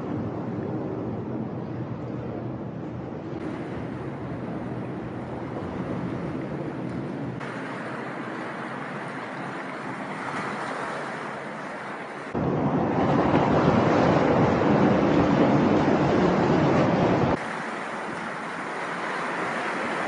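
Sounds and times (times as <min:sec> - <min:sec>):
wind rush on motorcycle: 0:12.4 - 0:17.4.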